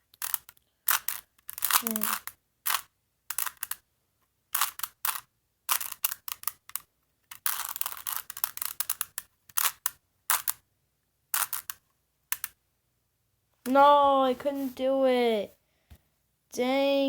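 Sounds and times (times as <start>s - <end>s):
puzzle cube clicking: 0.0s - 3.9s, 4.5s - 10.6s, 11.3s - 12.6s.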